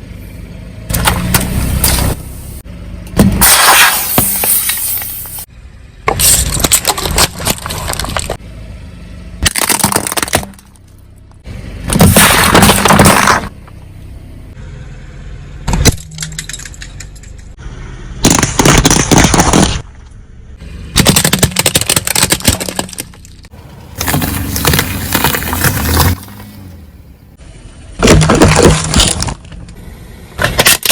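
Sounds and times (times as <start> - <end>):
tyres crushing brittle objects: 6.1 - 8.4, 9.4 - 10.8, 11.9 - 13.5, 21.0 - 26.7, 28.0 - 29.6.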